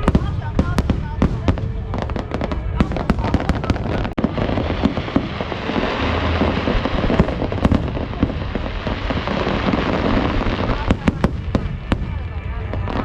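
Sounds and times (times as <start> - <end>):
fireworks bangs and crackling: 0.0 - 13.0.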